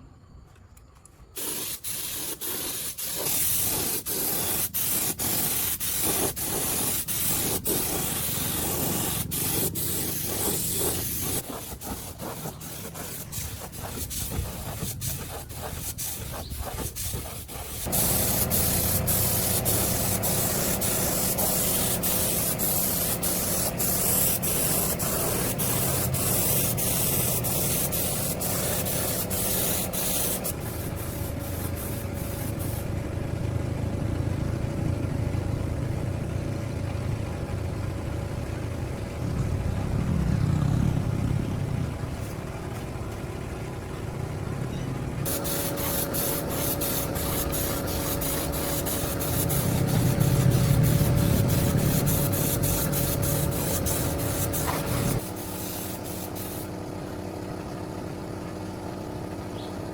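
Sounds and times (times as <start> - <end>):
compressed air spraying: 1.4 - 32.9, 45.3 - 56.8.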